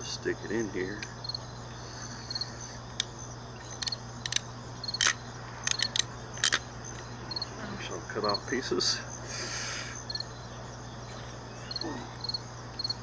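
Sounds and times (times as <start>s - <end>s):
crickets chirping: 0.0s - 13.0s
crimping tool clicking: 5.0s - 6.6s.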